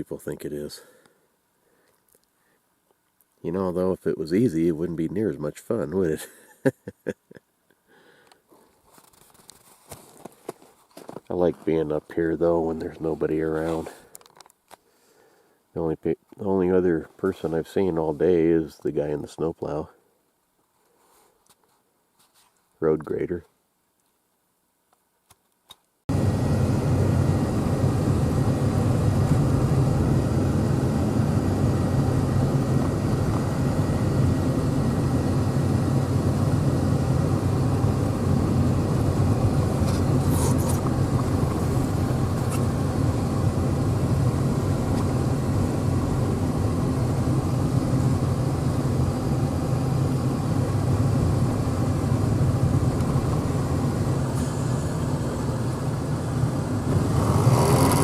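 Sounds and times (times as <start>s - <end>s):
vehicle engine and road rumble: 26.1s - 58.0s.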